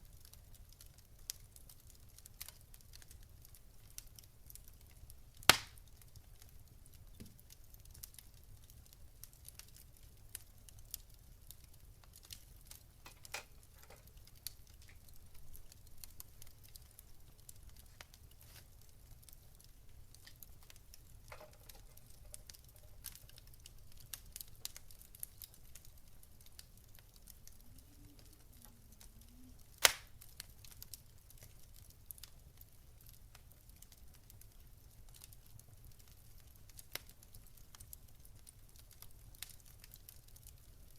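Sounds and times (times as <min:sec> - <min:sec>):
fire popping: 0:00.0 - 0:40.9
wood fire crackling: 0:00.0 - 0:40.9.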